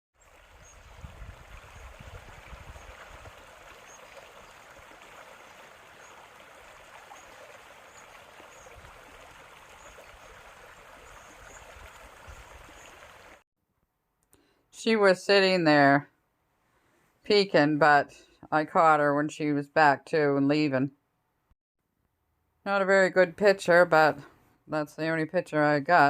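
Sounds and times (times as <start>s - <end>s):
running water rushing: 0.2s - 13.4s.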